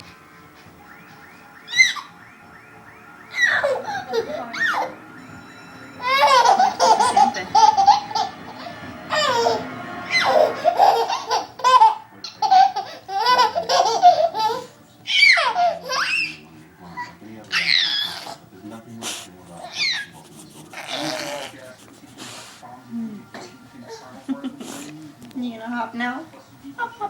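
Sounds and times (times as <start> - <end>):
baby laughing: 6.0 - 16.4, 19.6 - 21.8.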